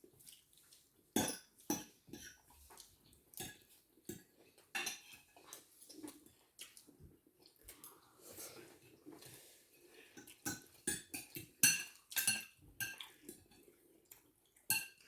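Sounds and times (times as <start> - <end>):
cutlery clinking on plates: 1.2 - 5.7, 10.2 - 13.8, 14.6 - 15.0.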